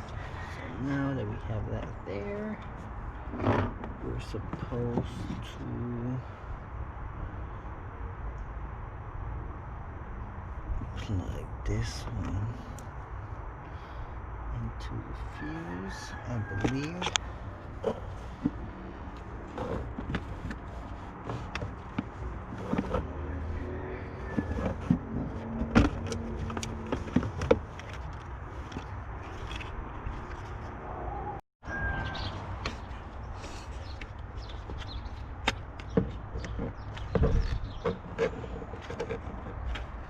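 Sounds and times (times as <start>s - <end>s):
hands handling plastic parts: 16.4s - 30.8s, 32.6s - 40.0s.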